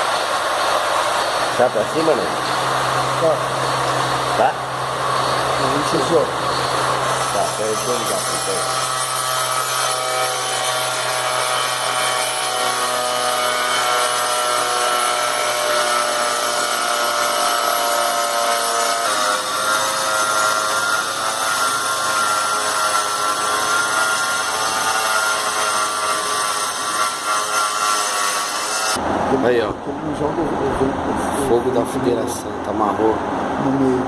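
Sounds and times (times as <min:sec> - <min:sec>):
exhaust fan whirring: 0:00.0 - 0:12.0, 0:29.0 - 0:34.0.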